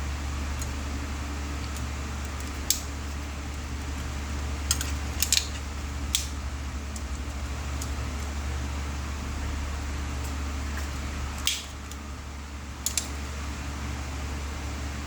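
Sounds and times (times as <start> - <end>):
steady low hum: 0.0 - 15.0
hand tools clicking on small parts: 3.5 - 8.3, 12.8 - 13.2.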